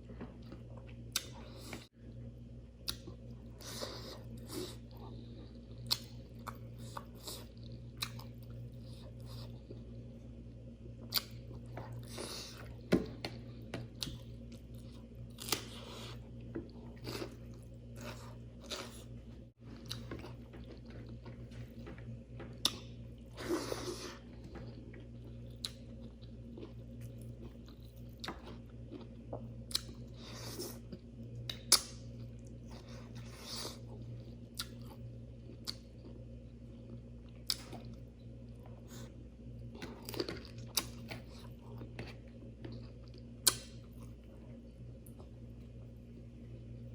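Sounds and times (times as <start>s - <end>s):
steady low hum: 0.0s - 46.9s
chewing and mouth clicks: 2.8s - 10.0s, 19.8s - 39.0s.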